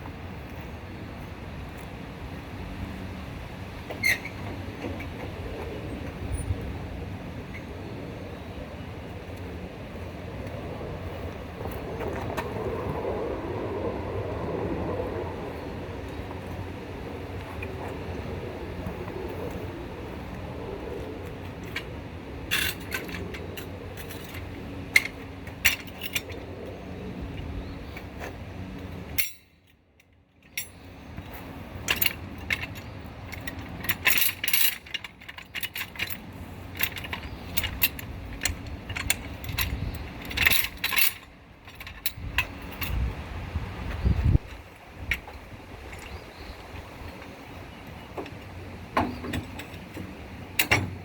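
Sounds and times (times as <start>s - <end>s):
steady low rumble: 5.2s - 29.6s.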